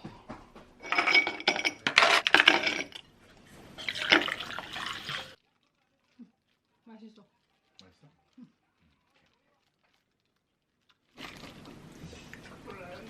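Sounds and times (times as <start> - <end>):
liquid pouring and splashing: 2.3 - 13.0.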